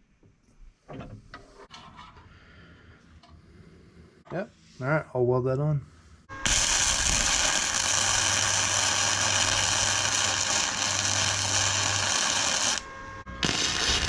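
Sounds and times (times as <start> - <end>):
electric arc welding crackling: 6.4 - 14.0.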